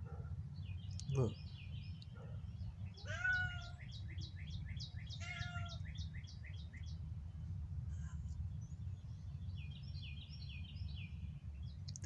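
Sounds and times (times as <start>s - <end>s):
bird singing: 0.0s - 12.0s
low outdoor rumble: 0.0s - 12.0s
cat meowing in pain: 3.0s - 3.8s, 5.2s - 5.8s.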